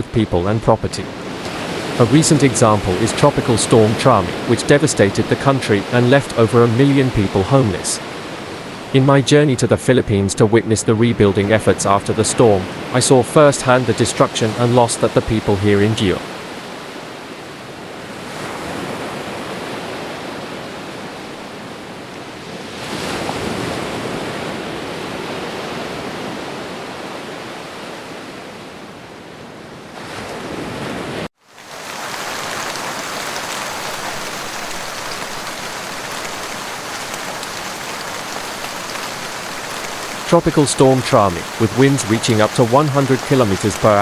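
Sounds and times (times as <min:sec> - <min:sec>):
storm water rushing: 0:00.0 - 0:20.9, 0:30.4 - 0:44.0.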